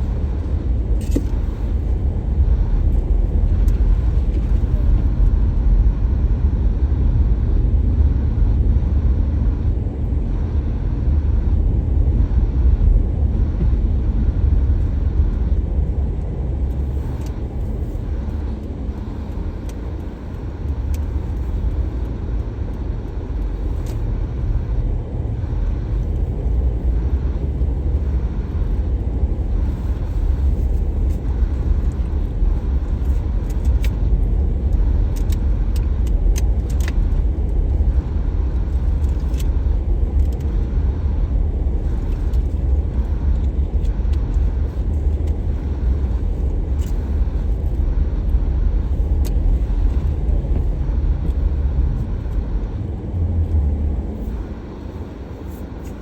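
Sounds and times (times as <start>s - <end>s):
car engine and road noise: 0.0s - 56.0s.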